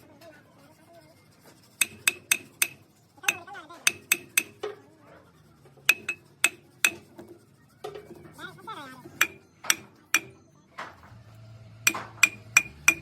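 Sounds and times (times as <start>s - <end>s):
hammer striking metal: 1.8s - 4.7s, 5.9s - 7.2s, 9.2s - 10.9s, 11.9s - 13.0s.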